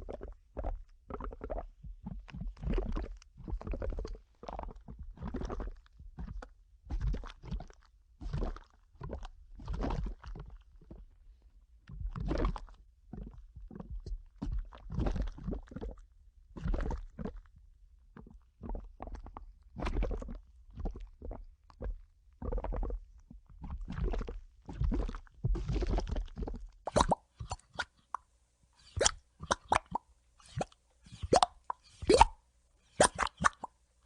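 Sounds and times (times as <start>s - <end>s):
cartoon wet squelching: 23.6s - 33.8s.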